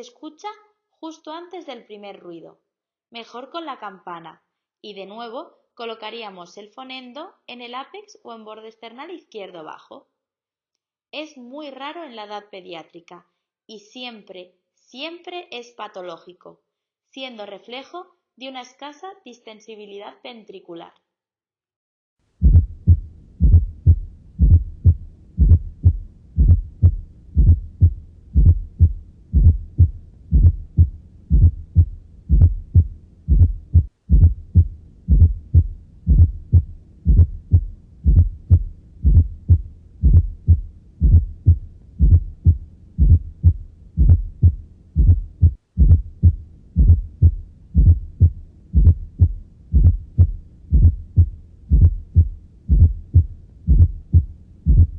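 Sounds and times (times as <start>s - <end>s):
heartbeat through stethoscope: 22.4s - 54.9s.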